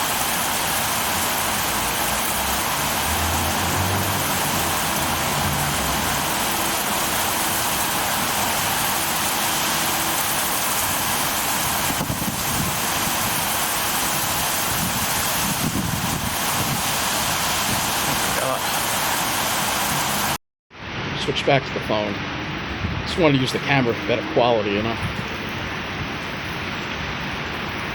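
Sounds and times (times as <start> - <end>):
heavy rain falling: 0.0 - 27.9
gusty wind buffeting: 10.9 - 27.9.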